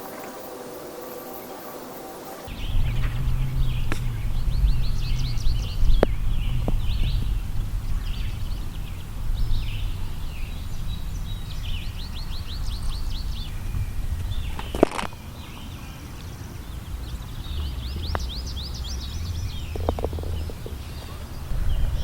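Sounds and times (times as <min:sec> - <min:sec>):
small birds chirping: 0:00.0 - 0:22.0
wind buffeting microphone: 0:02.5 - 0:22.0
sharp clicks: 0:14.5 - 0:15.2.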